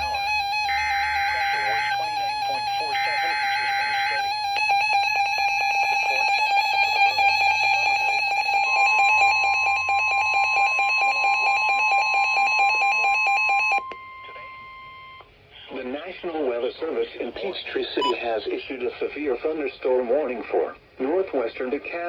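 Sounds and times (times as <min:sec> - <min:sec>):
steady warning alarm tone: 0:00.0 - 0:15.2.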